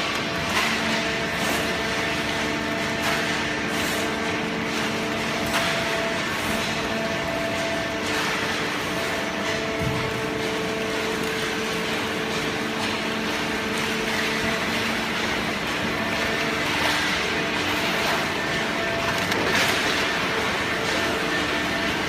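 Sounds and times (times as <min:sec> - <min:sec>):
hydraulic pump humming: 0:00.0 - 0:22.0.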